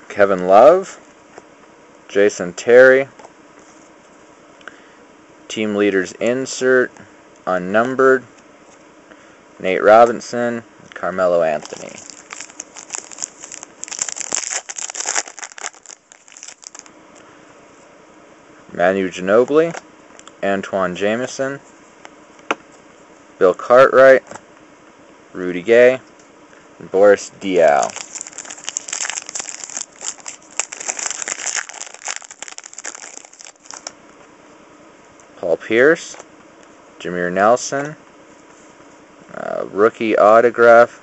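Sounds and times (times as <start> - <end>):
foil wrapper crinkling: 11.5 - 16.9, 27.6 - 33.9.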